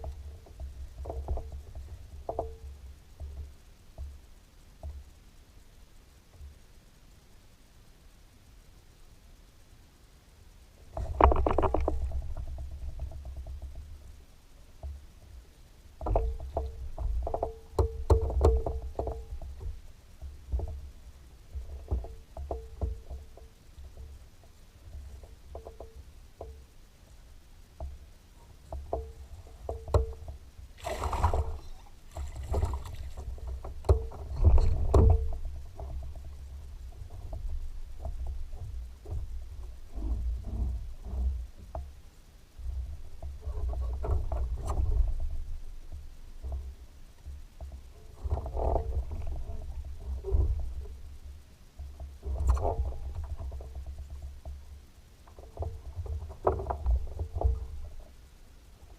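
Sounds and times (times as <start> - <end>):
clicks and knocks of handling: 10.9 - 13.9.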